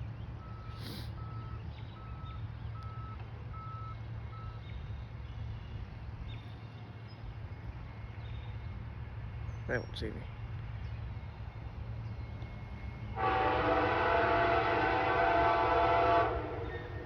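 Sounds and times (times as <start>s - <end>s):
vehicle backup alarm beeping: 0.3s - 4.9s.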